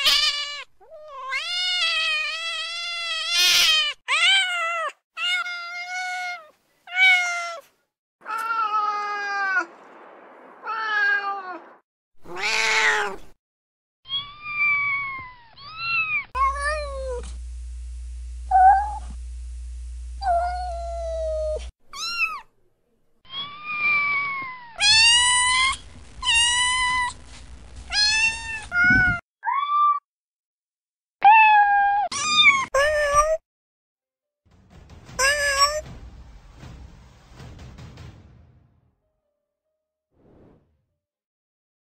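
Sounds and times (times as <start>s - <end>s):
cats meowing: 0.0s - 9.6s, 12.2s - 13.2s
steady low hum: 16.4s - 21.7s, 25.4s - 28.8s.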